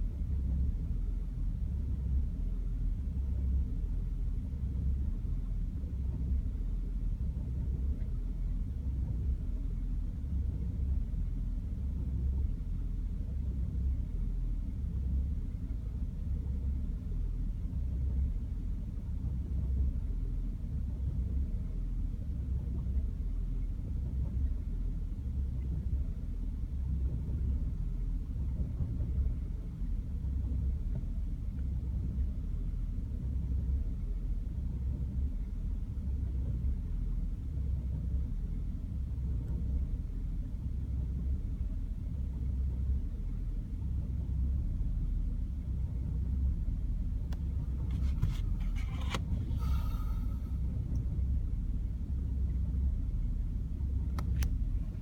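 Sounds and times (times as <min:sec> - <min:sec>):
car engine idling roughly: 0:42.6 - 0:55.0.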